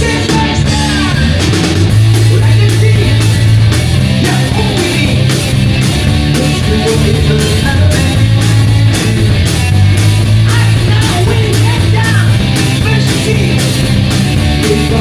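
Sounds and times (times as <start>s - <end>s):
person singing: 0.0s - 1.6s, 2.3s - 5.4s, 6.2s - 9.4s, 10.4s - 13.8s, 14.4s - 15.0s
distorted guitar: 0.0s - 15.0s
rock band playing loud: 0.0s - 15.0s.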